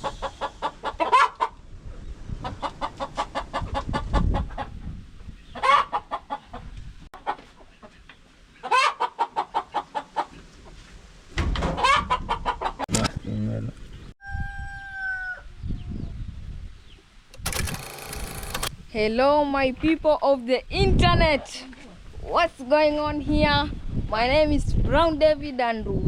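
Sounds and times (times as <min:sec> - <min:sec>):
hens cackling: 0:00.0 - 0:01.6, 0:02.4 - 0:04.8, 0:05.5 - 0:08.0, 0:08.6 - 0:10.4, 0:11.8 - 0:12.9
hens clucking: 0:00.0 - 0:01.6, 0:02.4 - 0:04.8, 0:05.5 - 0:10.8, 0:11.8 - 0:12.9.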